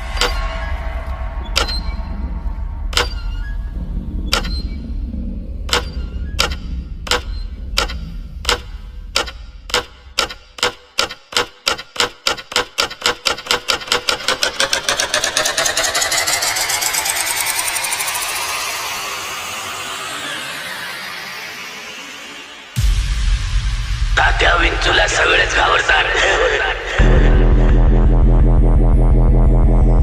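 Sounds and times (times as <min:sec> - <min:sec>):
bass: 0:00.0 - 0:10.6, 0:22.8 - 0:30.0
rising noise sweep: 0:14.5 - 0:30.0.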